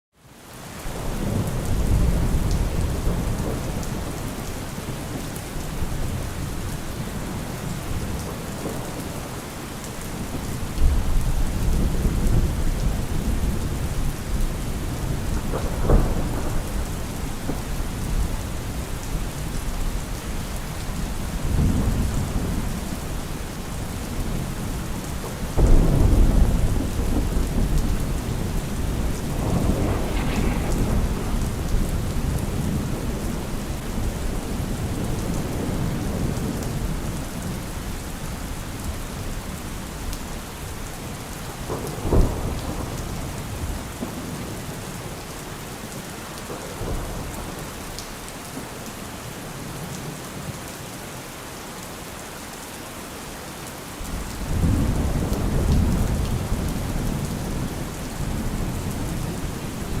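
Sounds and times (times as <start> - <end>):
steady rain: 0.1 - 60.0
thunder rumbling: 1.0 - 4.8, 10.2 - 37.7, 41.5 - 44.5, 54.1 - 60.0
sharp thunder crack: 25.6 - 33.4.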